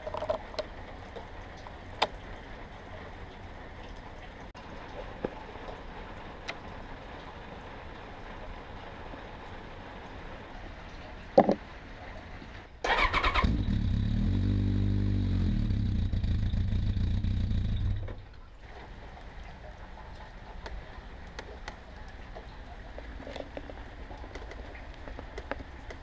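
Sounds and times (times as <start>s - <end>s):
vehicle engine running: 13.4s - 18.2s.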